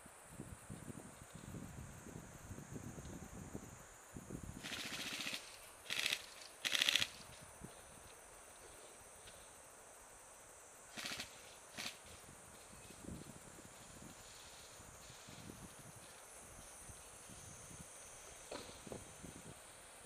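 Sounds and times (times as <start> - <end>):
airsoft gun firing bursts: 4.6 - 7.2, 10.9 - 12.0.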